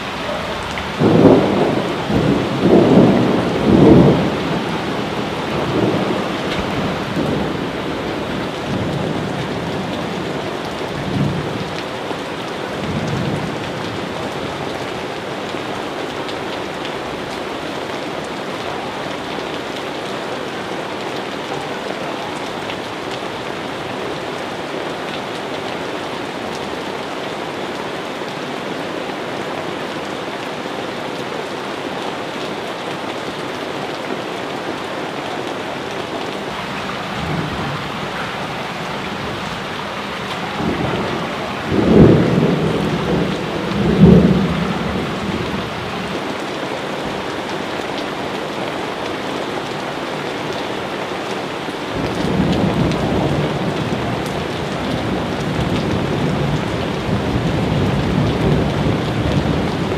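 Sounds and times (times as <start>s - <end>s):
thunder rumbling: 0.0s - 11.7s, 36.0s - 46.3s
steady rain falling: 0.0s - 59.9s.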